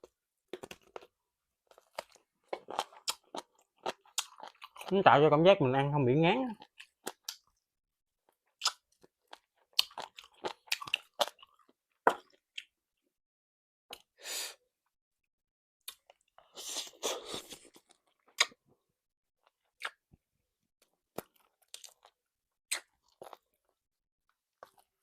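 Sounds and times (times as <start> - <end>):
chewing and crunching: 0.5 - 5.0, 8.2 - 12.7, 20.8 - 23.8, 24.4 - 25.0.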